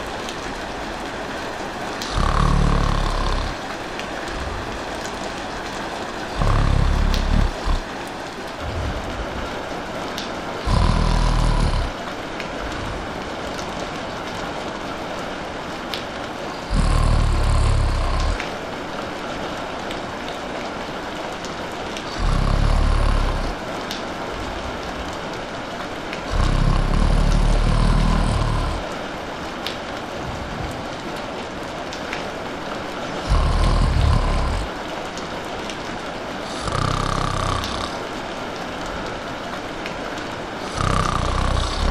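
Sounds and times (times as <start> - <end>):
rain falling: 0.0 - 41.9
person snoring: 2.0 - 7.9, 8.5 - 9.6, 10.6 - 12.0, 12.6 - 13.1, 16.5 - 18.4, 22.0 - 23.6, 26.3 - 28.9, 33.2 - 34.7, 36.4 - 38.0, 40.6 - 41.9.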